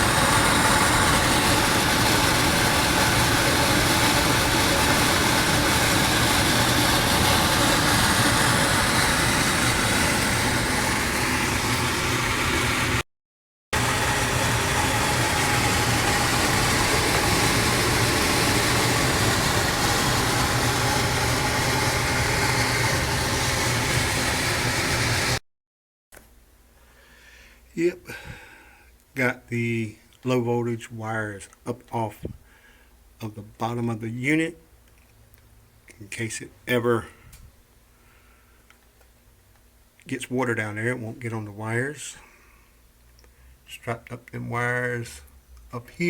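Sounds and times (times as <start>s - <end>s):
machinery humming: 0.0s - 13.0s, 13.8s - 25.4s.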